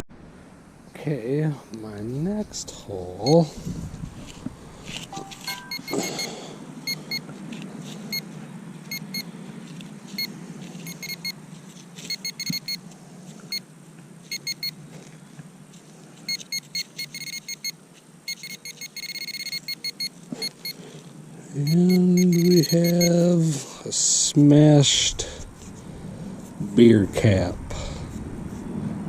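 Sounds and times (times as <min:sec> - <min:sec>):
steady low hum: 0:00.0 - 0:29.0
metal detector high beeps: 0:03.2 - 0:03.5, 0:05.1 - 0:07.3, 0:08.9 - 0:09.3, 0:10.2 - 0:11.4, 0:12.1 - 0:12.8, 0:14.3 - 0:14.8, 0:16.3 - 0:20.8, 0:21.6 - 0:23.3.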